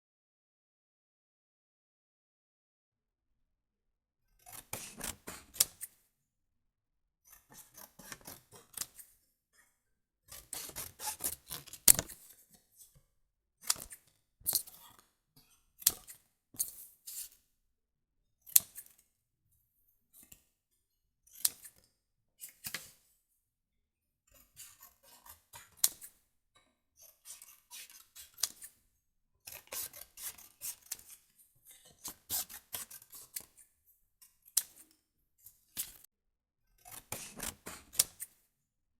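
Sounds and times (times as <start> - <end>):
scissors snipping paper: 10.3 - 12.1.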